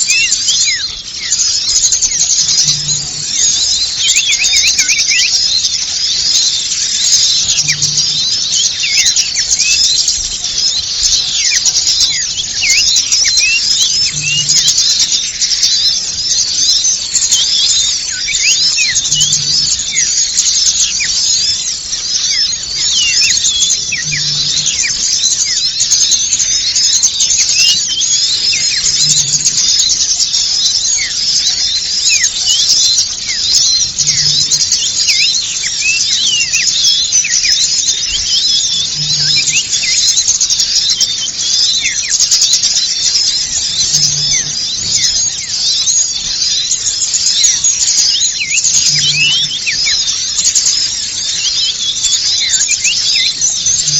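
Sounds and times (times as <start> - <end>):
chorus of small birds chirping: 0.0 - 53.9.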